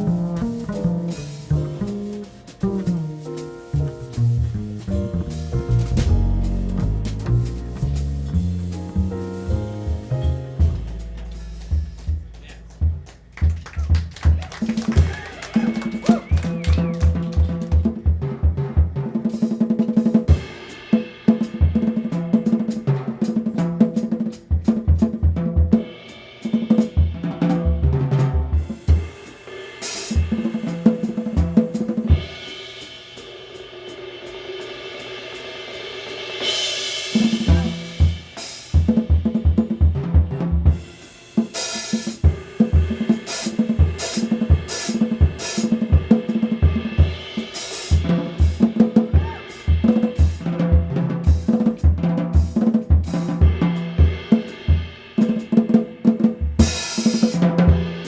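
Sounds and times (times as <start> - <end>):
snare and hi-hat strokes: 0.0 - 13.4, 28.2 - 58.0
bass drum thumps: 0.0 - 14.4, 37.3 - 40.8
jazz drum kit playing: 0.0 - 58.0
tom hits: 4.2 - 8.1.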